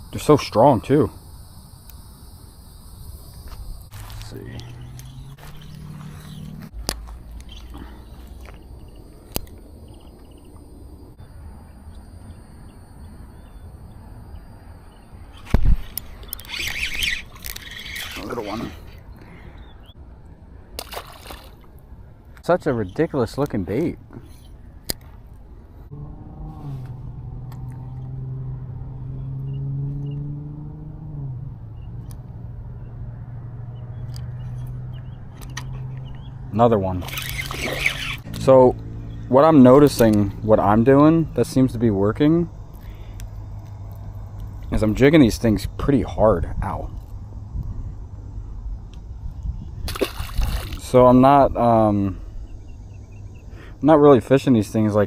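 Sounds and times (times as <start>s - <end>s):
engine hum: 0.0s - 55.0s.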